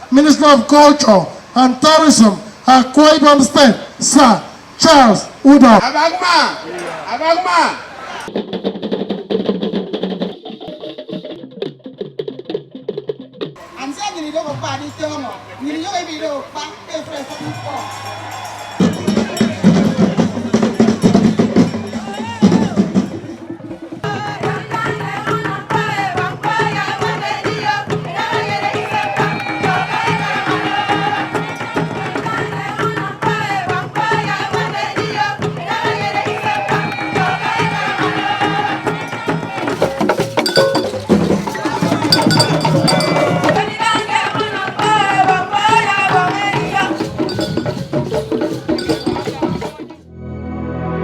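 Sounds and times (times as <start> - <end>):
rhythmic hand percussion: 17.0 - 50.0
folk singing: 20.5 - 49.7.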